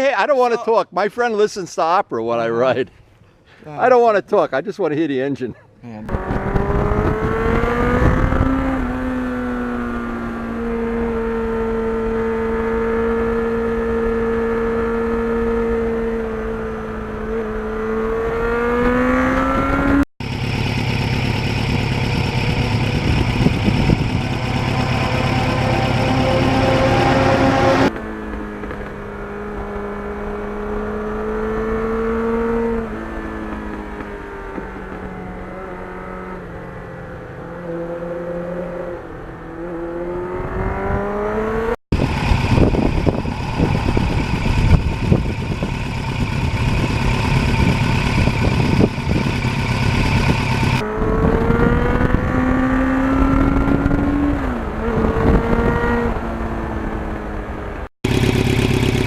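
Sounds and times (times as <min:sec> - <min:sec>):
motorcycle engine revving: 0:06.1 - 0:59.0
heavy rushing noise: 0:18.7 - 0:28.0, 0:41.9 - 0:52.3.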